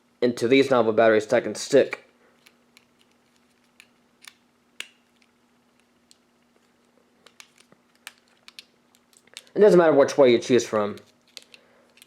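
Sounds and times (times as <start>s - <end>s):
faint steady hum: 0.0s - 12.0s
batteries clicking and tapping: 2.4s - 9.6s, 10.9s - 12.0s.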